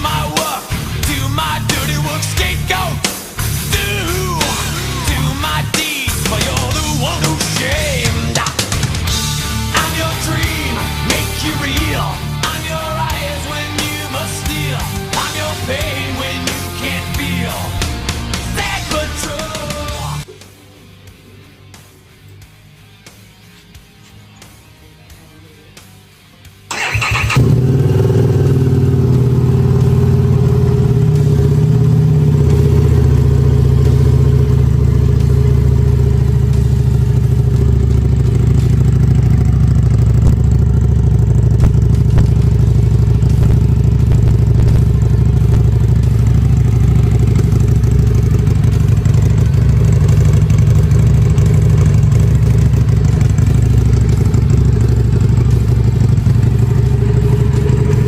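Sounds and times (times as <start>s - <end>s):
motorcycle engine idling: 0.0s - 20.3s, 26.7s - 58.0s.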